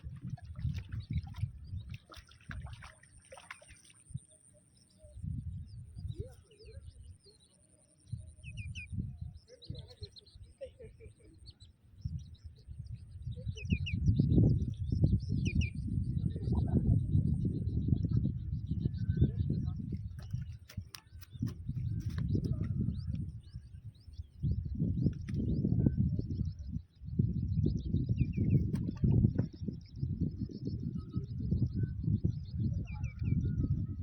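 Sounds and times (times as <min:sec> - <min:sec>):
small birds chirping: 0:00.0 - 0:34.0.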